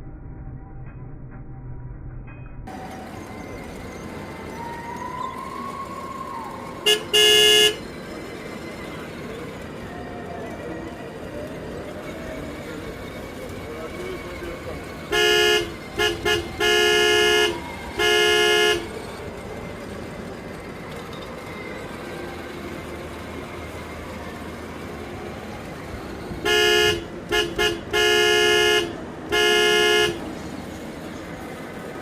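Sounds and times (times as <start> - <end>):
toy bike horn honking: 6.7 - 8.3, 13.3 - 19.2, 26.3 - 30.4.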